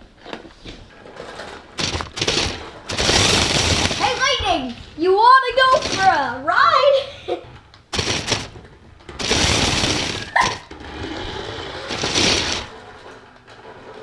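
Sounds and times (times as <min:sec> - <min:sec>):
toy car motor whirring and rattling: 0:01.8 - 0:04.4, 0:08.0 - 0:08.6, 0:09.2 - 0:13.1.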